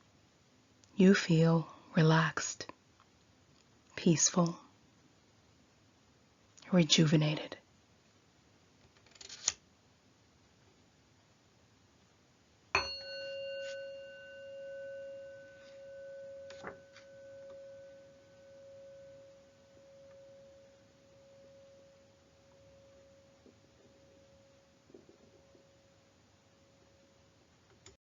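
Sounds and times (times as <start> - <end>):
meditation bell ringing: 12.8 - 24.8.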